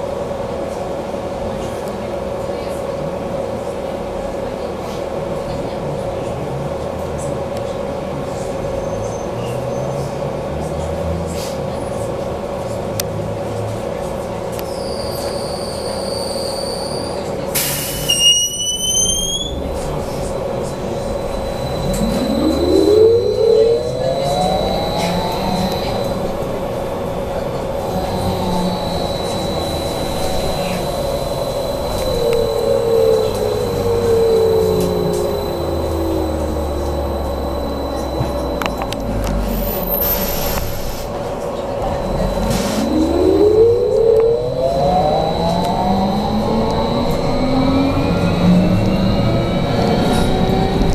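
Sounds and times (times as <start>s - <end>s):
electric traction drive whine: 19.5s - 50.9s
electrical hum: 19.5s - 50.9s
low running rumble: 19.5s - 50.9s
short high-pitched tones: 20.6s - 41.0s.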